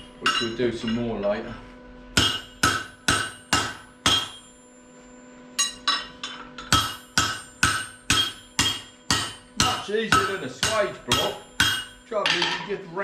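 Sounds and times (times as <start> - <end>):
hammer ringing on steel bar: 2.2 - 4.7, 5.6 - 12.6.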